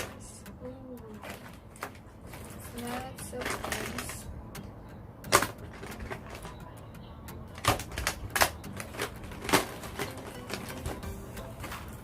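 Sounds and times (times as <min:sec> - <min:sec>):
pens knocking together: 0:03.3 - 0:04.2, 0:07.5 - 0:11.1.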